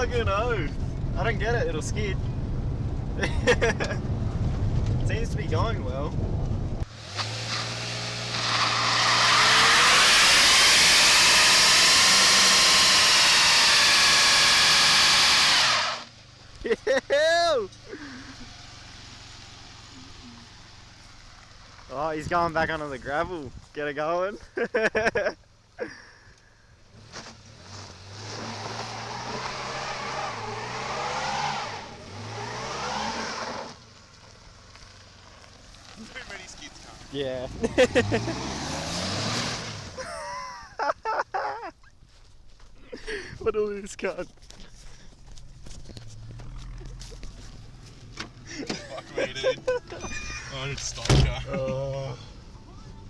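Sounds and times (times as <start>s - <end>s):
engine at high revs: 6.8s - 16.1s, 27.9s - 33.8s, 37.4s - 40.0s
wheels spinning on gravel: 6.9s - 16.5s, 27.0s - 38.6s, 44.2s - 48.6s
tyres screeching: 7.1s - 16.1s, 27.0s - 33.8s, 45.4s - 53.0s.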